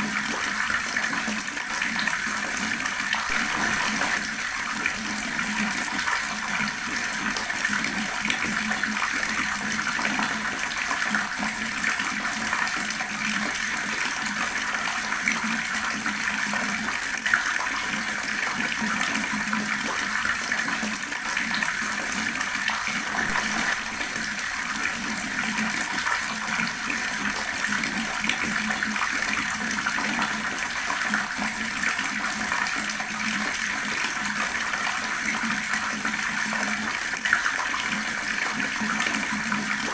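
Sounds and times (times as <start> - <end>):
water running from a tap: 0.0 - 39.9
sharp splash or click: 3.2 - 4.7, 23.0 - 24.9.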